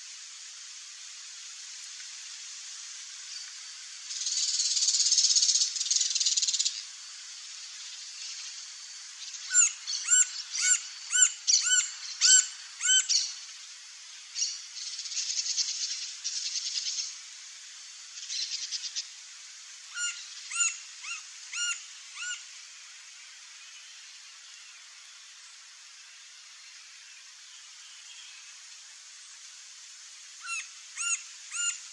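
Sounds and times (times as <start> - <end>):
woodpecker calling: 9.5 - 13.2, 20.0 - 22.4, 30.4 - 31.8.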